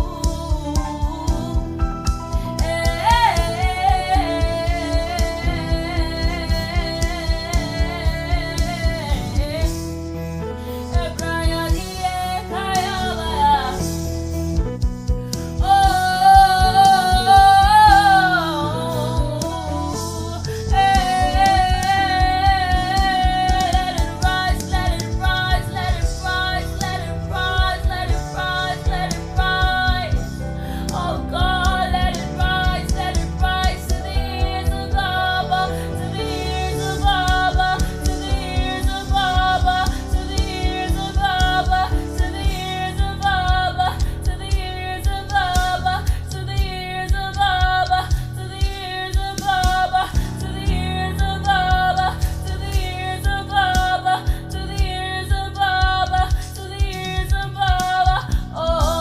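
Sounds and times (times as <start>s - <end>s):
soft instrumental backing with guitar: 0.0s - 59.0s
worship music melody: 0.0s - 59.0s
steady low beat: 20.6s - 57.5s.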